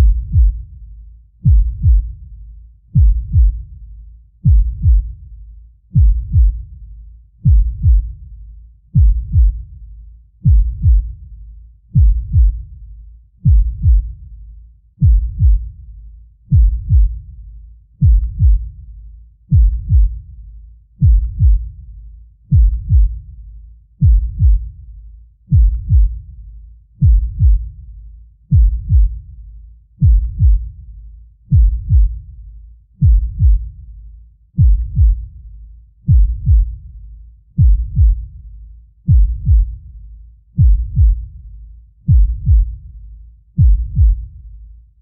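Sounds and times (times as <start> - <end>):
deep heartbeat: 0.0 - 45.0.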